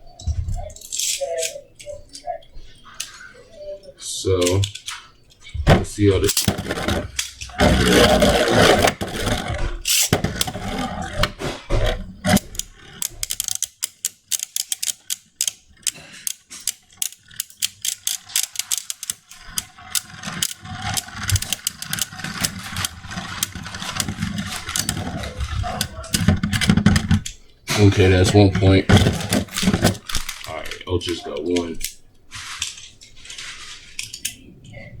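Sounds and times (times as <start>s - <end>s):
spinning tops clashing clicks: 6.2s - 27.4s.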